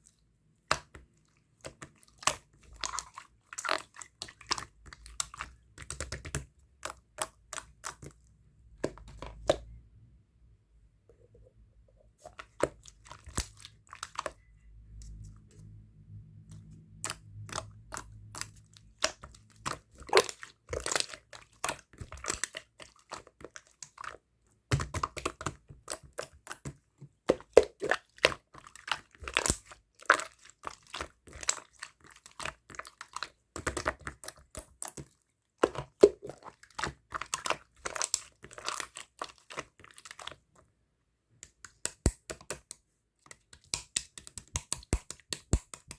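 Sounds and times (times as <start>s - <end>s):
slime squished by hand: 12.3s - 15.7s, 16.4s - 40.4s.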